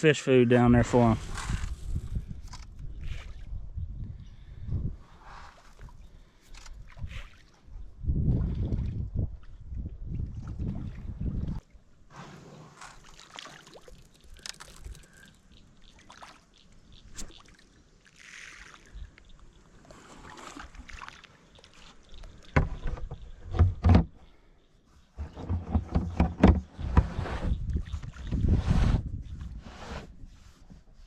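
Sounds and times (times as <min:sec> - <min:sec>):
water splashing and sloshing: 0:05.3 - 0:24.2, 0:25.2 - 0:31.0.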